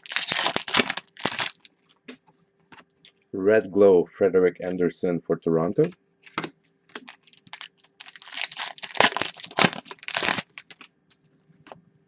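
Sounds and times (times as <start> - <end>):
foil wrapper crinkling and tearing: 0.0 - 1.7, 6.3 - 10.9.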